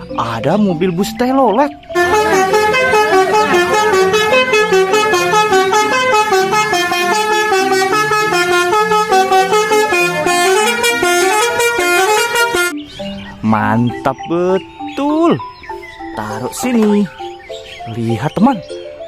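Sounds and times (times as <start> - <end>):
multi-tone bus horn jingle: 1.9 - 13.0.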